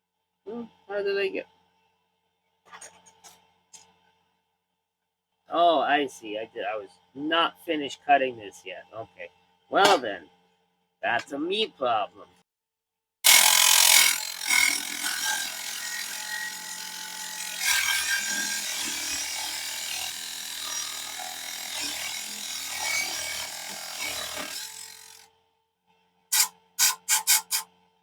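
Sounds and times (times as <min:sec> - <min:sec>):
table saw cutting aluminum: 0:09.8 - 0:10.1, 0:13.2 - 0:25.3, 0:26.3 - 0:27.7
short sharp bursts: 0:26.3 - 0:27.6.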